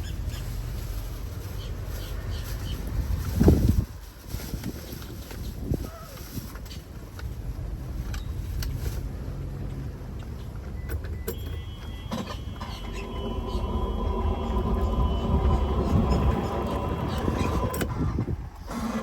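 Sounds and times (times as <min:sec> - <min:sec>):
wind buffeting microphone: 0:02.7 - 0:06.6, 0:11.8 - 0:18.8
golf cart rolling rumble: 0:07.4 - 0:19.0
steady whine: 0:11.6 - 0:18.5.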